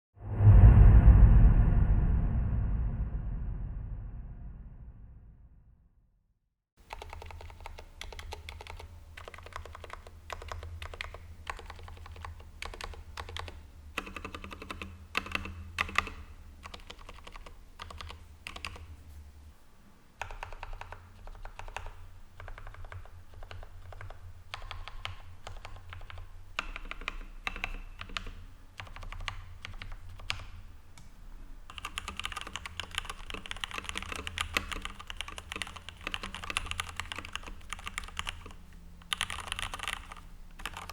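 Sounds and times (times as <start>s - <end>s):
mechanical keyboard typing: 6.8s - 18.9s, 20.2s - 30.5s, 31.7s - 40.9s.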